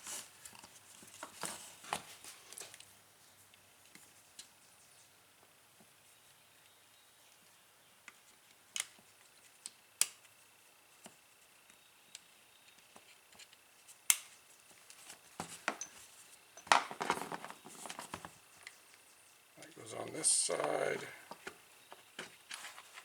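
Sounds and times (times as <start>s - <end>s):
small parts clattering: 15.4s - 18.4s.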